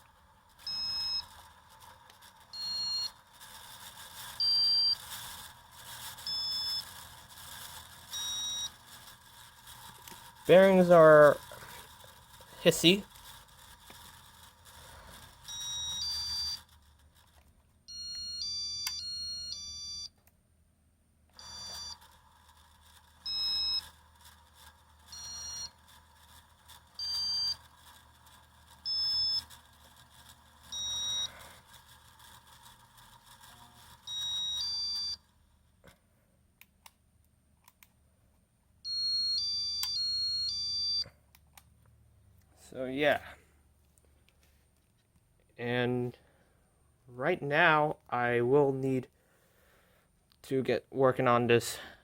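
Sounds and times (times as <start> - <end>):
fan control beeps and chirps: 0.0 - 20.3, 21.3 - 35.4, 38.8 - 41.5
faint fan motor hiss: 0.0 - 52.0.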